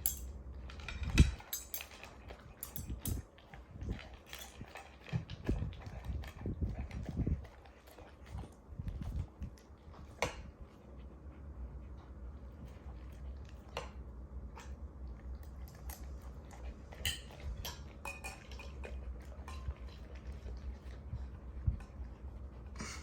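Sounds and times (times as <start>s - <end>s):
dog bowl clinking: 0.0s - 3.2s
low steady hum: 0.0s - 23.0s.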